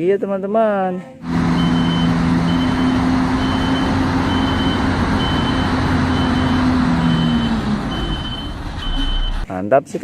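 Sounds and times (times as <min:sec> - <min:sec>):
truck engine droning: 0:01.2 - 0:09.5
reversing alarm beeping: 0:01.5 - 0:09.5.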